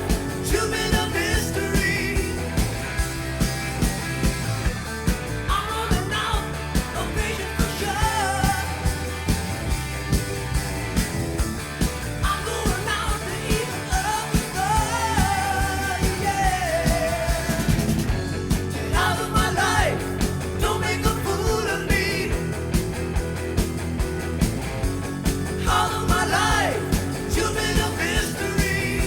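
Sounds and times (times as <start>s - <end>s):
rock band with drum beat: 0.0s - 29.0s
lead singer: 0.3s - 2.6s, 5.4s - 9.0s, 12.2s - 18.1s, 18.8s - 22.6s, 25.6s - 29.0s.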